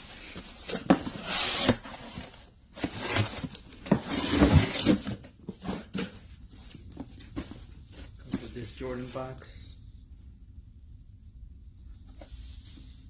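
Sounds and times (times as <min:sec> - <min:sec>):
cardboard box scraping and rustling: 0:00.0 - 0:08.6.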